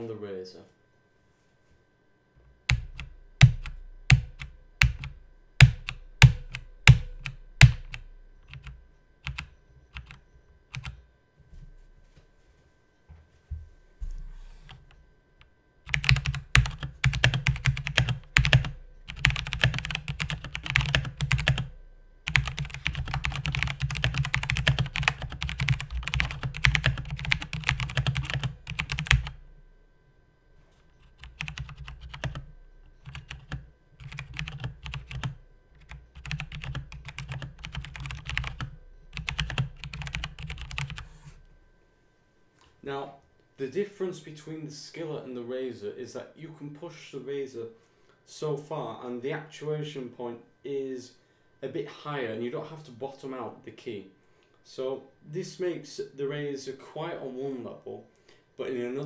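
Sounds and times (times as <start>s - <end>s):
mechanical keyboard typing: 2.7s - 11.0s, 15.9s - 21.7s, 22.3s - 29.4s, 31.0s - 32.4s, 33.0s - 41.1s.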